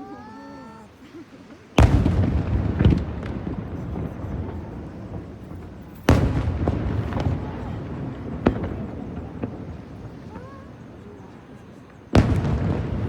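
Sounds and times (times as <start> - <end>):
firework shells bursting: 1.8 - 11.0.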